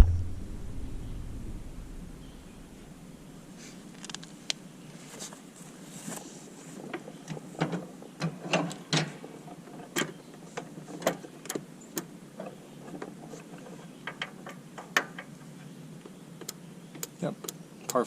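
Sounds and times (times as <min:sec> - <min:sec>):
steady low hum: 0:00.0 - 0:03.9.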